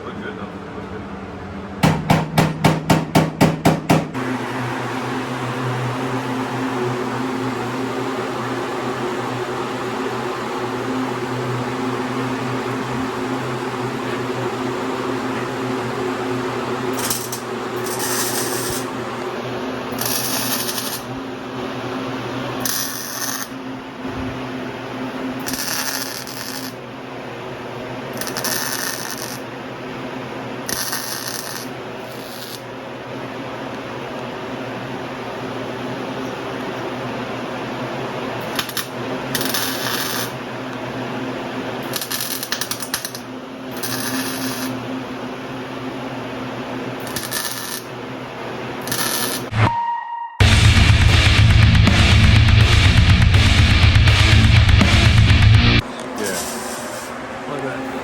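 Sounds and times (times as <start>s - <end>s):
sharp knocks: 1.8s - 4.2s
power grinder on metal: 20.0s - 21.1s, 25.4s - 26.7s.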